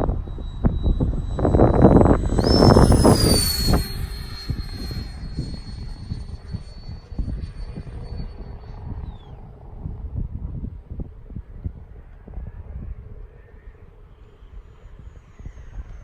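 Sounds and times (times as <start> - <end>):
electric jet fan whining: 0.0 - 10.2
wind buffeting microphone: 0.0 - 16.0.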